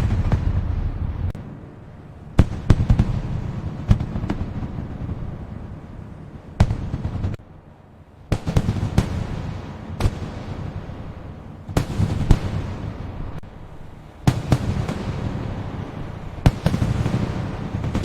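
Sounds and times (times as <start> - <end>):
low rumble: 0.0 - 2.4
fireworks bangs: 0.0 - 7.4, 8.3 - 18.0.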